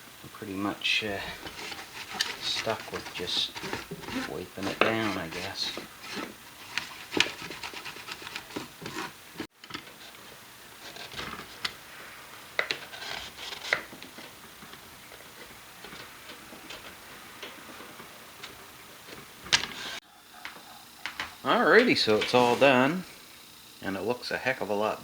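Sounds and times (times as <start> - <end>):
cloth rubbing on amp cabinet: 1.0 - 9.5, 21.4 - 23.1.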